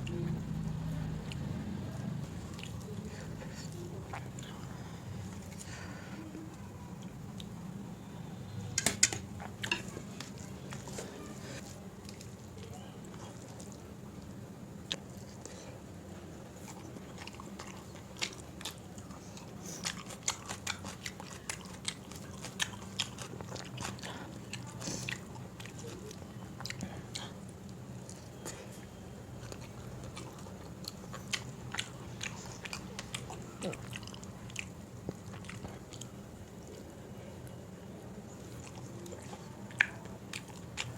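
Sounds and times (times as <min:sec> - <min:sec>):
person chewing food: 0:00.0 - 0:06.1, 0:16.5 - 0:37.6, 0:38.4 - 0:40.9.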